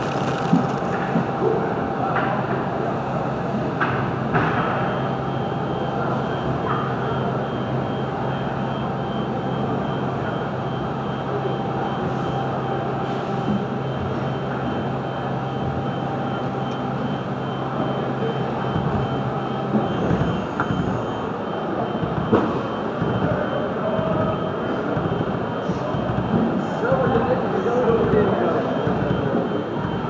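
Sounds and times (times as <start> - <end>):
lathe humming and whining: 0.0 - 6.6, 7.6 - 30.0
steady background din: 14.3 - 30.0.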